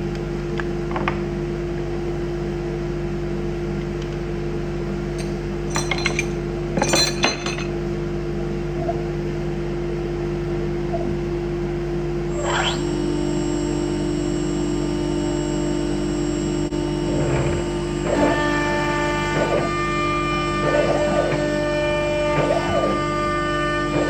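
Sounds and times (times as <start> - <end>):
metallic clinking: 5.2 - 7.8
router machine hum: 11.1 - 24.0.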